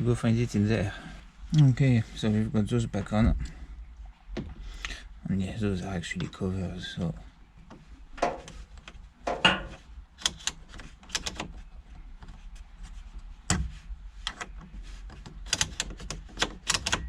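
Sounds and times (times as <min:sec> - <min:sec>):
knobs clicking and knocking: 0:07.6 - 0:12.4, 0:13.5 - 0:17.0.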